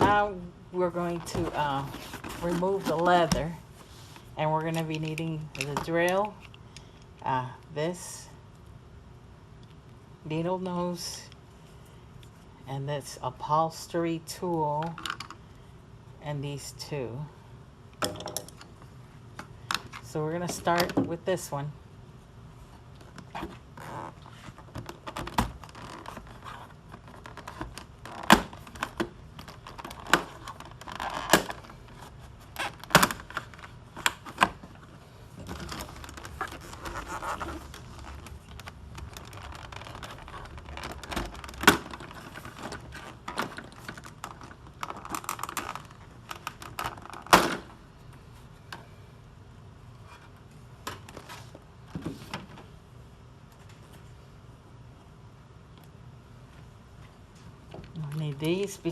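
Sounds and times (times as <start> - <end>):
scraping and rustling: 1.2 - 4.3.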